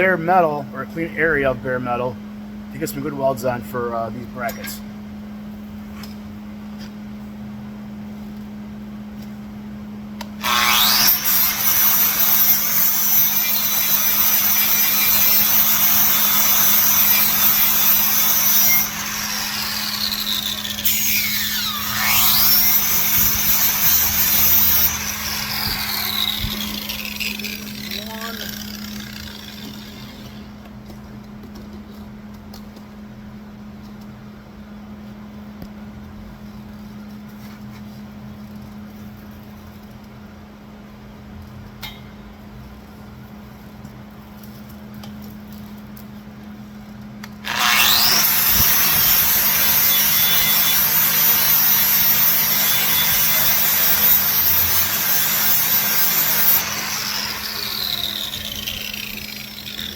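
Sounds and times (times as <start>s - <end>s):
electric sander grinding metal: 10.4s - 30.4s, 47.5s - 59.9s.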